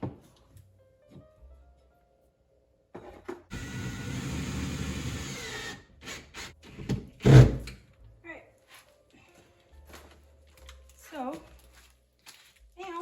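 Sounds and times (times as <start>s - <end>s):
power drill running: 3.5s - 6.5s.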